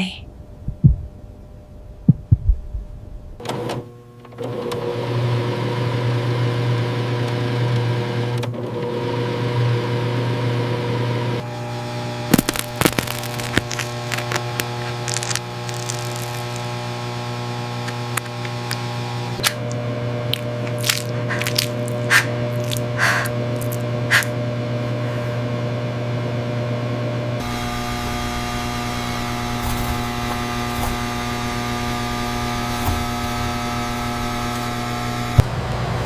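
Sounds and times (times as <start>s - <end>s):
electrical machine hum: 0.0s - 36.0s
low thumps: 0.6s - 3.4s.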